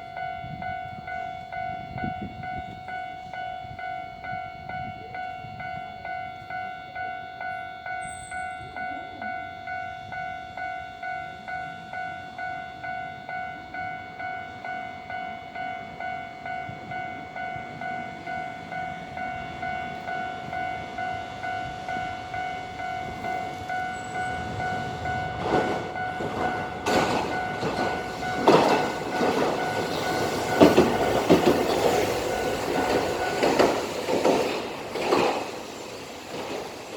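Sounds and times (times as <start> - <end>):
level-crossing warning bell: 0.0 - 36.9
tram wheels clanking over rail joints: 15.6 - 36.9.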